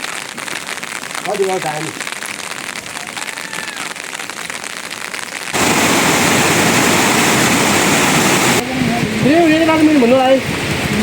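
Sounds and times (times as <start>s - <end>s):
rain pattering: 0.0s - 11.0s
rushing water: 2.5s - 11.0s.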